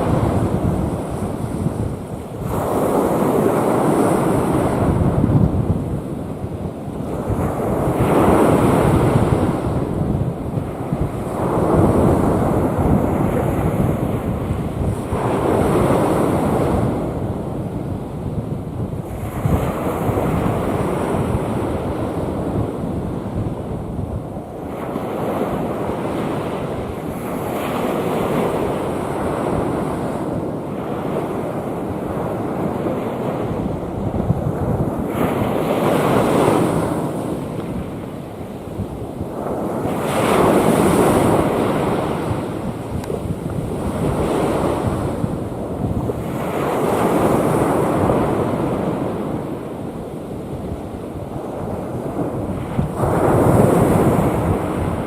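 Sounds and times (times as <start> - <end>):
wind rumbling on microphone: 0.0 - 55.0
waves breaking: 24.5 - 55.0.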